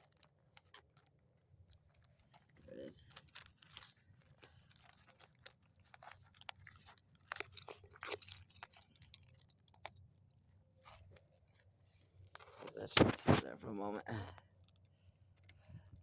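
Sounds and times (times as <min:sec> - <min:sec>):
small objects clicking and knocking: 0:00.0 - 0:11.7.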